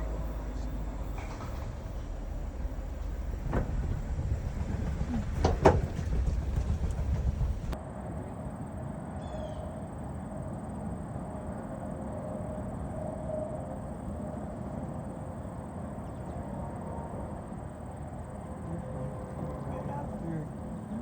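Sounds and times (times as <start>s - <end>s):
vehicle rumble: 0.0s - 7.8s.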